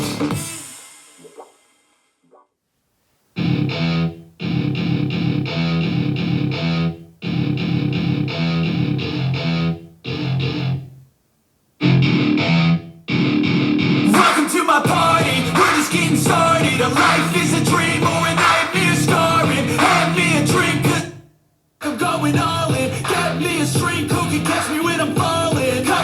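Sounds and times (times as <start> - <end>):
distorted electric guitar chords: 0.0 - 0.7, 3.4 - 10.9, 11.8 - 21.2, 22.0 - 26.0
person singing: 14.1 - 21.2, 21.8 - 26.0.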